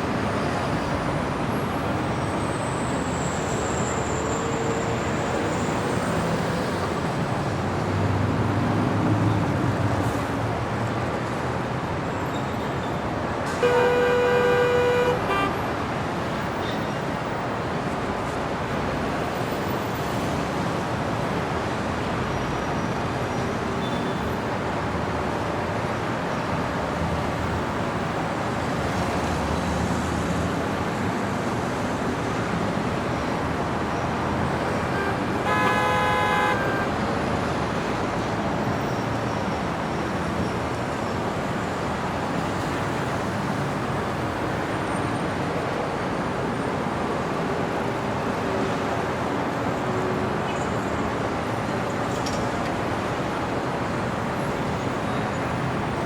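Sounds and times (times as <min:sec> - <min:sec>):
passing cars and tyre noise: 0:00.0 - 0:56.0
car horn: 0:13.6 - 0:15.7, 0:34.6 - 0:37.0.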